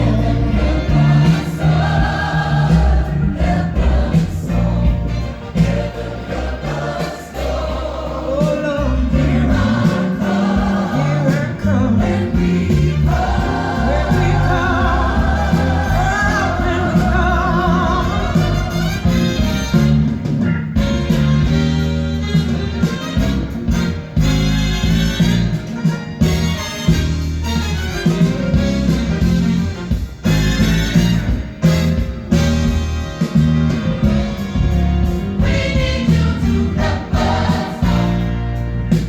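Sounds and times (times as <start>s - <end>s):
gospel choir singing: 0.0s - 20.4s, 33.2s - 39.0s
strong bass line: 0.0s - 39.0s.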